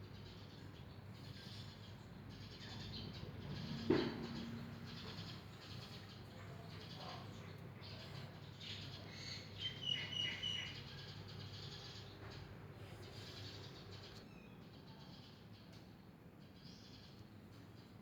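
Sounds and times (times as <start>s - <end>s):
bird chirping: 7.9s - 12.1s.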